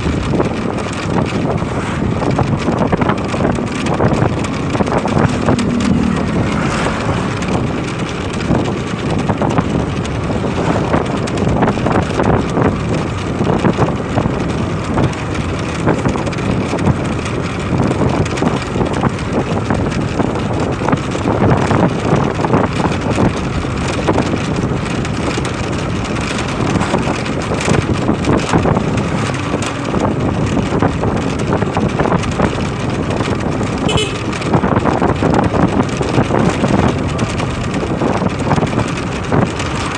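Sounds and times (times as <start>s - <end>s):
motorcycle engine: 0.0s - 39.9s
wind rushing over microphone: 0.0s - 39.9s.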